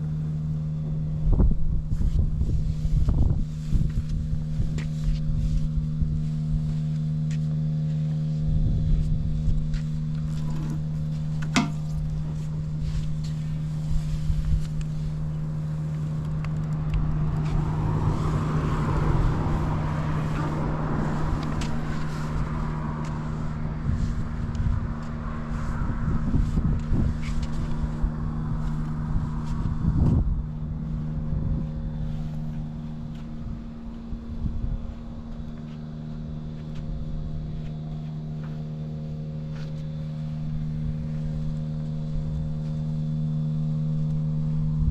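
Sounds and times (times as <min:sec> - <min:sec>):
motorcycle engine idling: 0:00.0 - 0:44.9
broad rushing noise: 0:01.2 - 0:35.3.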